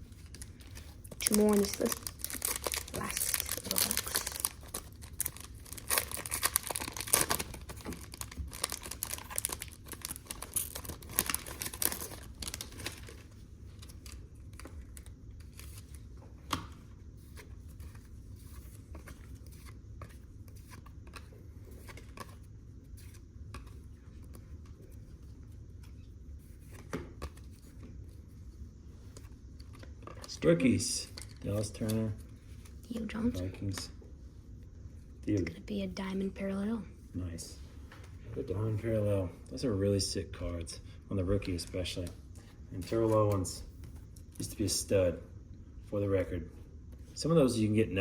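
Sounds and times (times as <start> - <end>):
packaging torn open and crinkled: 1.2 - 13.2.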